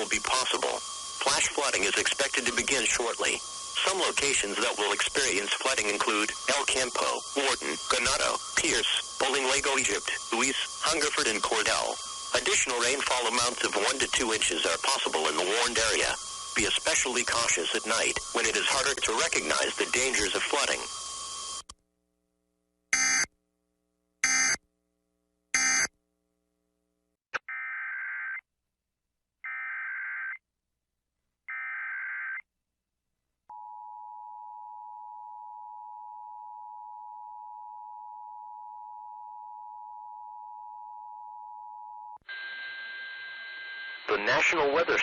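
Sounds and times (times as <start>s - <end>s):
screeching data bursts: 0.0s - 21.6s.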